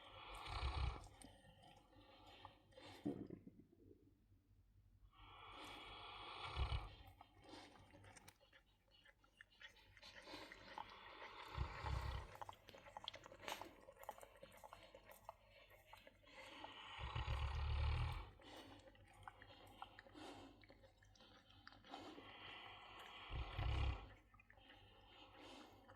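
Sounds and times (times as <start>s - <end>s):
deep rasping snoring: 0.0s - 1.2s, 5.2s - 7.2s, 10.9s - 12.5s, 16.5s - 18.4s, 22.3s - 24.1s.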